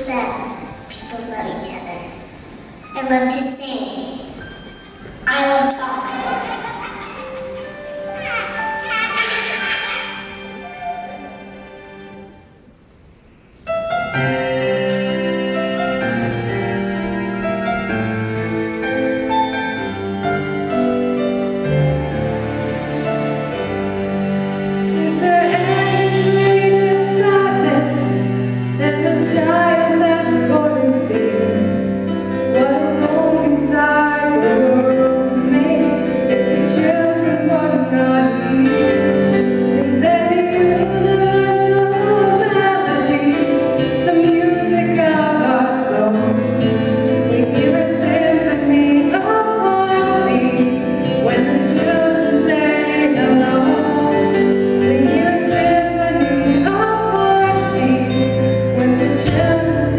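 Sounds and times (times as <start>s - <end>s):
song with sung melody: 22.4s - 59.9s.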